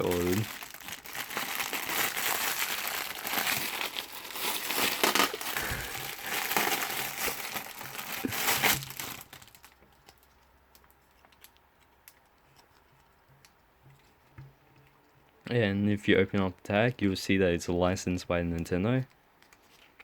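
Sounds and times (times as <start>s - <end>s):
packaging crinkling: 0.0s - 12.8s.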